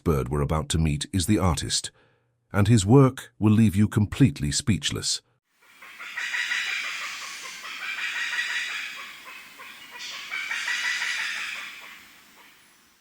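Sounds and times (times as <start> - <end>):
flock of birds calling: 5.6 - 13.0.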